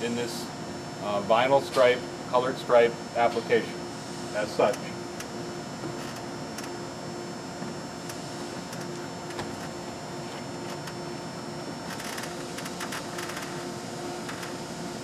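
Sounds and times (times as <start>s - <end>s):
room hum and hiss: 0.0s - 15.0s.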